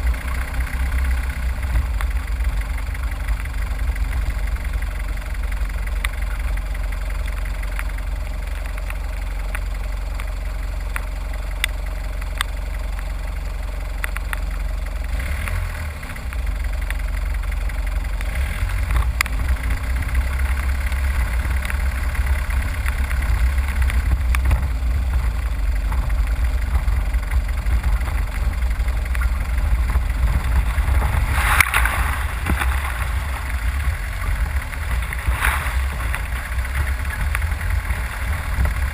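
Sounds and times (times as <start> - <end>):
vehicle engine rumbling: 0.0 - 38.9
rush of noise: 18.4 - 38.9.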